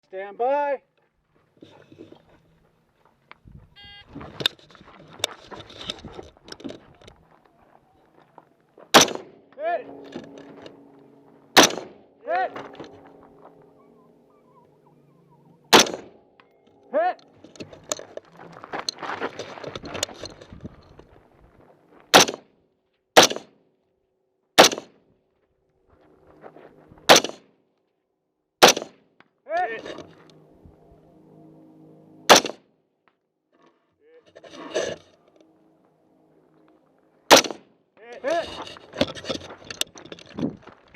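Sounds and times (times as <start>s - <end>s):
clicking and rustling handling noise: 4.2s - 8.9s, 16.4s - 21.4s, 38.1s - 40.9s
rifle shots: 8.9s - 9.4s, 11.5s - 12.0s, 15.7s - 16.2s, 22.1s - 22.4s, 23.2s - 23.5s, 24.6s - 25.0s, 27.1s - 27.4s, 28.6s - 29.0s, 32.3s - 32.6s, 37.3s - 37.6s.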